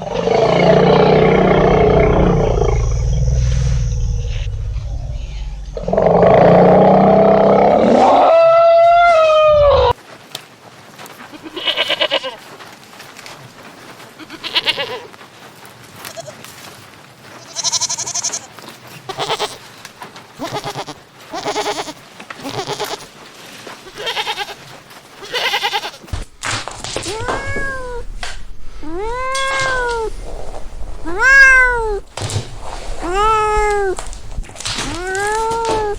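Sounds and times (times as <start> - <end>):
farm animal call: 14.2 - 15.1, 17.4 - 19.7, 20.4 - 23.1, 23.8 - 26.1, 28.8 - 30.2, 31.0 - 32.1, 33.0 - 35.9
quavering bleats: 17.4 - 18.5, 19.1 - 19.6, 20.4 - 23.1, 23.9 - 24.6, 25.2 - 26.1, 34.8 - 35.9.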